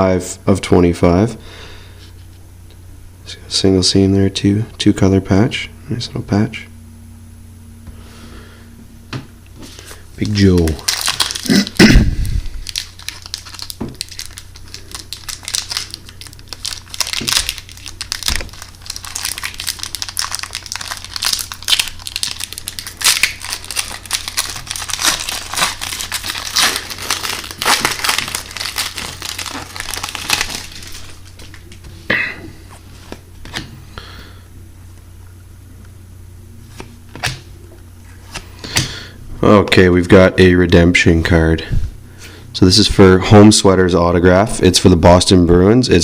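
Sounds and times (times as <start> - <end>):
cards rustling: 9.6 - 11.6, 12.5 - 32.0
wrapper tearing and crinkling: 10.2 - 31.7.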